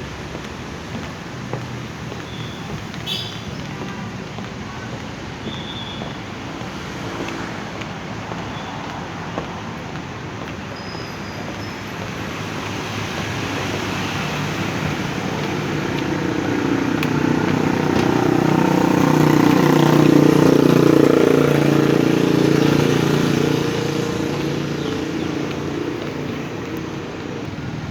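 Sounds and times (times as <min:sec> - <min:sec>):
steady traffic noise: 0:00.0 - 0:27.9
vehicle engine passing by: 0:12.8 - 0:27.9.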